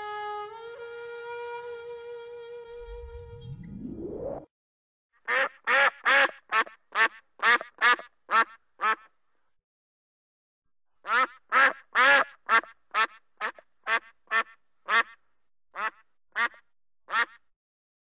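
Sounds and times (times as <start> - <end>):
duck quacking: 5.2 - 9.1, 11.0 - 15.2, 15.8 - 17.5.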